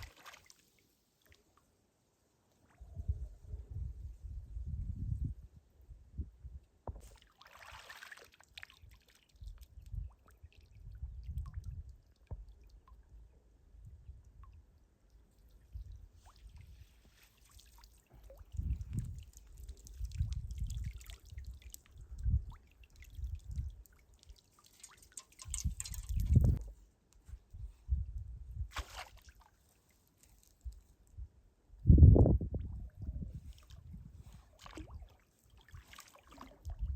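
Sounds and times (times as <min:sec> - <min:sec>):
water splashing and dripping: 0:00.0 - 0:01.4, 0:06.9 - 0:13.0, 0:14.3 - 0:26.7, 0:34.5 - 0:36.9
wind buffeting microphone: 0:02.8 - 0:07.0, 0:10.7 - 0:12.4, 0:18.4 - 0:22.6, 0:25.4 - 0:26.7, 0:31.2 - 0:35.0.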